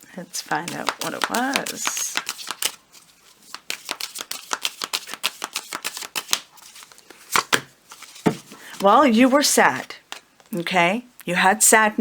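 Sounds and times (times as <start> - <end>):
cards being shuffled: 0.4 - 9.0.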